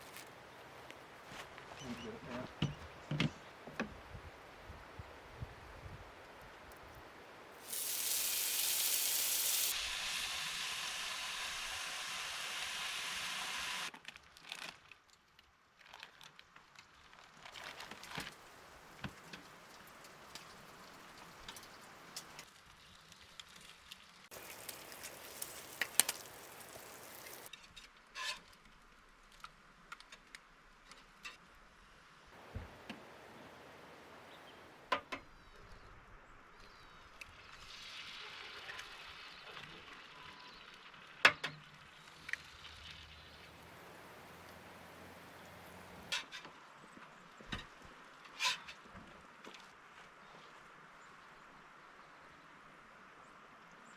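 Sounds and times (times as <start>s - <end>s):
food sizzling in a frying pan: 7.6s - 13.9s, 24.3s - 27.5s
crackles and clicks: 13.9s - 27.5s.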